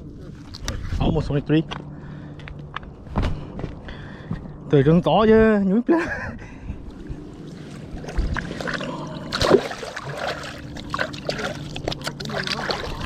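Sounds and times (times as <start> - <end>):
steady low hum: 0.0 - 13.0
water trickling and splashing: 7.4 - 13.0.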